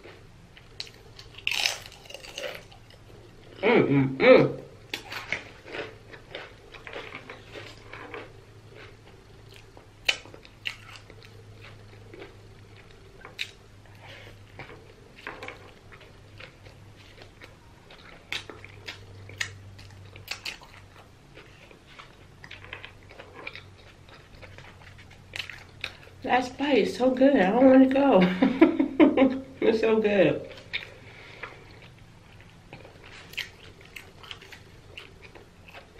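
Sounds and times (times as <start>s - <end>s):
food crunching: 0.0s - 3.6s, 4.7s - 26.6s, 30.5s - 35.9s
person chewing food: 0.0s - 3.6s, 4.7s - 26.2s, 30.5s - 35.9s
low steady hum: 0.0s - 35.9s.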